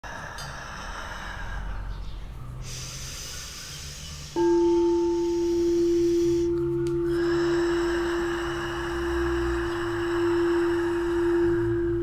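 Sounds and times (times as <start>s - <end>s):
singing bowl ringing: 4.4s - 12.0s.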